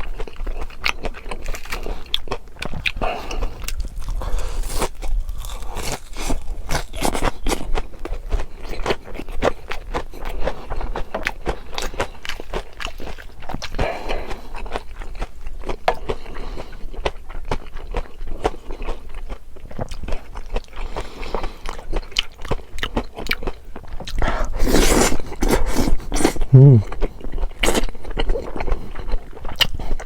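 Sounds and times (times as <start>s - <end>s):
chewing and biting food: 0.0s - 30.0s.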